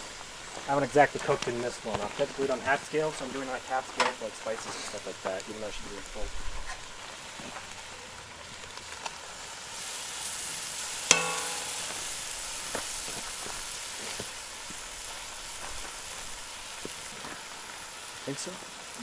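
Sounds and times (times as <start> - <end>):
food sizzling in a pot: 0.0 - 19.0
metal clink against pot: 11.1 - 12.2.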